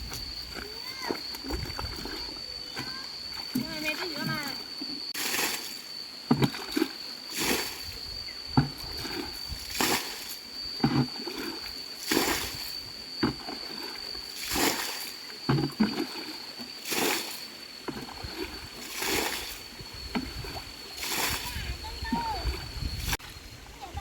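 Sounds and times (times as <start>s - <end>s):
water splashing: 0.0s - 8.0s, 8.6s - 24.0s.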